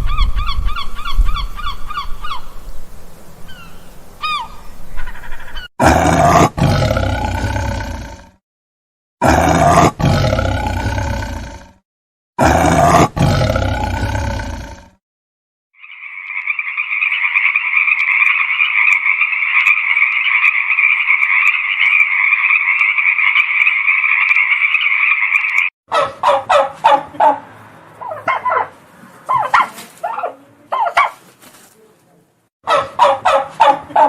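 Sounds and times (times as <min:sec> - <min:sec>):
big cat roaring: 0:05.8 - 0:08.4, 0:09.2 - 0:11.8, 0:12.4 - 0:15.0
high-pitched animal chorus: 0:15.8 - 0:25.7
turkey gobbling: 0:16.4 - 0:27.4, 0:28.0 - 0:31.2, 0:32.7 - 0:34.0.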